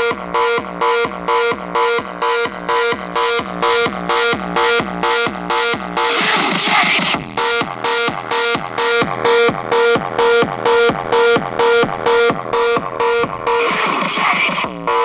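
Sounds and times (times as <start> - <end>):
electronic dance music: 0.0 - 15.0.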